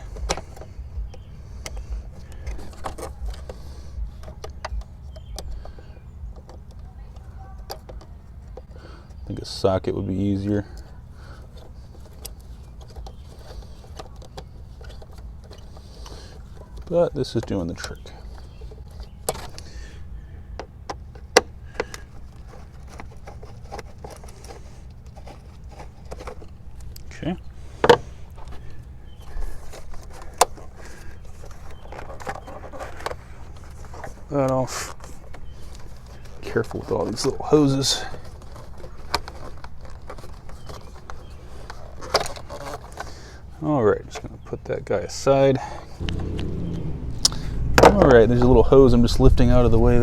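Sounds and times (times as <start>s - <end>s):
low steady rumble: 0.0s - 17.3s, 45.9s - 50.0s.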